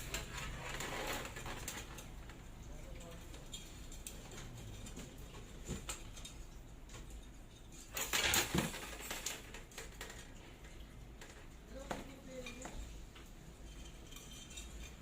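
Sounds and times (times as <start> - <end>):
scraping rustle: 0.0 - 2.4.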